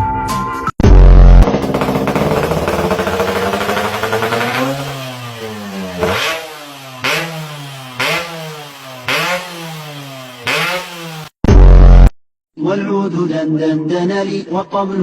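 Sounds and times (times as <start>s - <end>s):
engine revving in blips: 1.0s - 12.1s.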